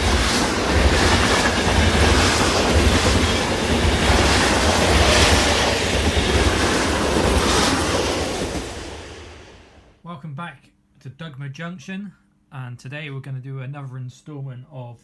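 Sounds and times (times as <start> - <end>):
train running on rails: 0.0 - 10.0.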